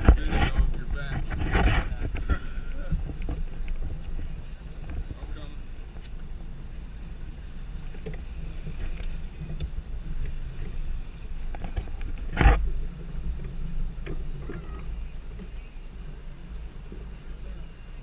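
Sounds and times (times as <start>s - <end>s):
boat engine running low: 0.0s - 18.0s
faint wind: 0.0s - 18.0s.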